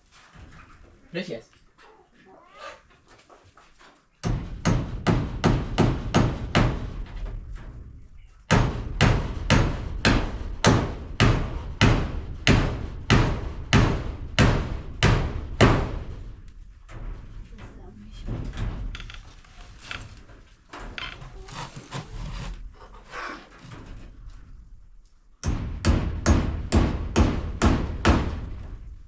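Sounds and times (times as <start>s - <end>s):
hammer striking nails: 4.2s - 7.1s, 8.5s - 16.2s, 25.4s - 28.7s.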